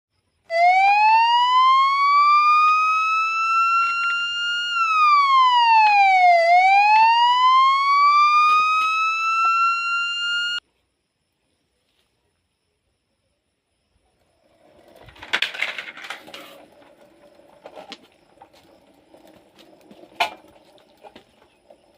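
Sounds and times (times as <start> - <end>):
wailing siren: 0.5 - 10.6.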